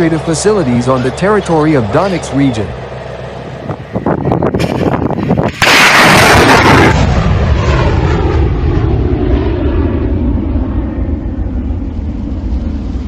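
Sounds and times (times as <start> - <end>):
long rumble: 0.0 - 13.0
rocket motor blast: 3.7 - 10.3.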